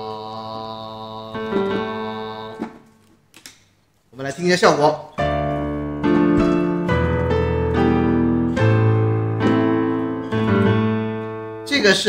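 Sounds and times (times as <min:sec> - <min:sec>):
slow piano chords: 0:01.0 - 0:03.0, 0:05.2 - 0:12.0.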